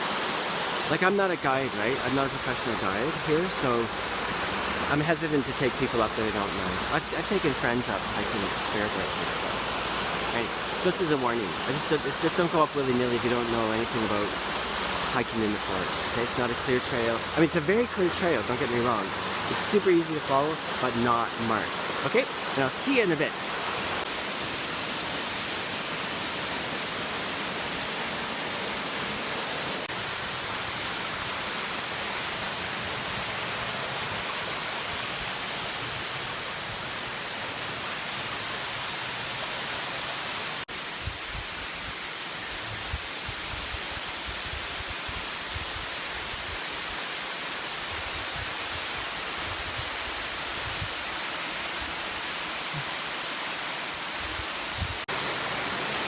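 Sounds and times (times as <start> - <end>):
waterfall rushing: 0.0 - 56.0.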